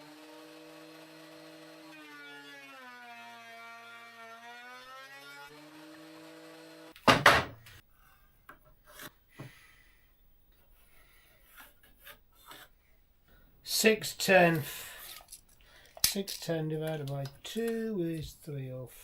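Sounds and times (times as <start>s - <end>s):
table saw motor humming: 0.0s - 7.6s
wood clattering: 7.0s - 7.8s.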